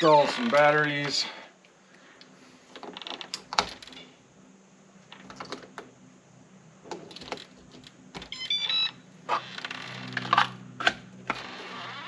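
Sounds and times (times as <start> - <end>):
electronic beeps: 8.3 - 9.0.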